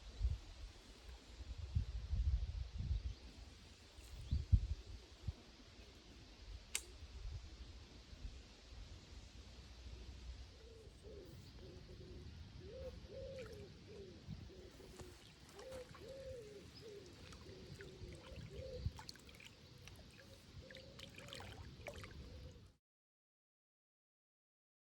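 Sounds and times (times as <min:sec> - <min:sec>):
pigeon cooing: 0:10.6 - 0:19.0.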